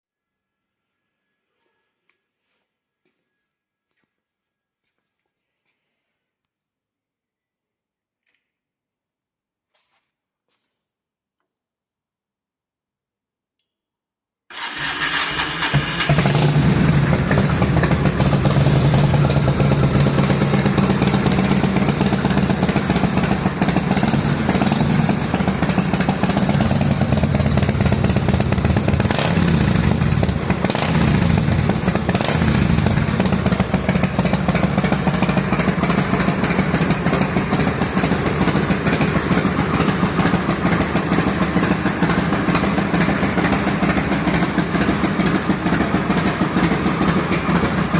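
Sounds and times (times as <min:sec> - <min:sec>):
motorcycle engine starting and idling: 0:14.5 - 0:47.9.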